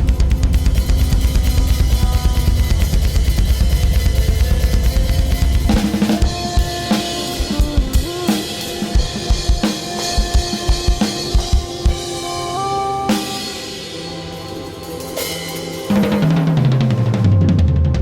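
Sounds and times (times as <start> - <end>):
held pitched notes: 0.0 - 17.5
drum kit playing: 0.0 - 18.0.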